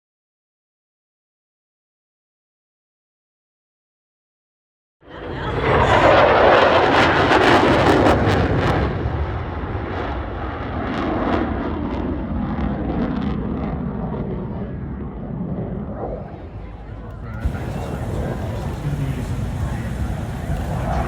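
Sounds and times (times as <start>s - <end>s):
crackling jet engine roar: 5.0s - 21.0s.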